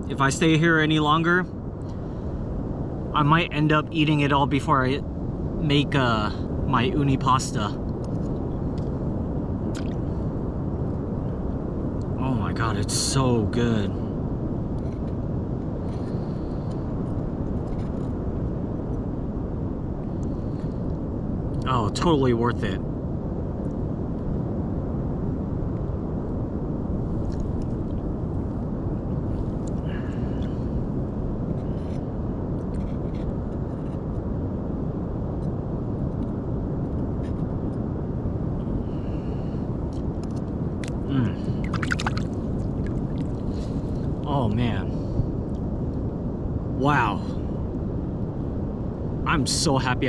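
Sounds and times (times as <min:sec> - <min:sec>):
wind: 0:00.0 - 0:50.0
surf at the shore: 0:40.7 - 0:45.2.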